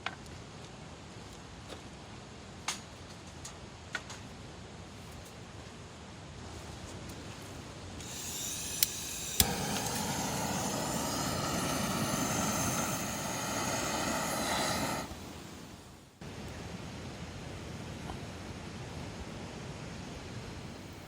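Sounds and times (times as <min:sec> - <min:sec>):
igniter clicks: 0:08.0 - 0:15.5
gas flame hissing roar: 0:08.0 - 0:16.9.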